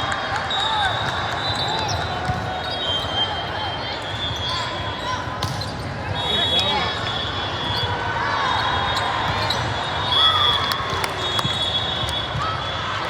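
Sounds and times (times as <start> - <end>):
shoes squeaking on floor: 9.0 - 12.2.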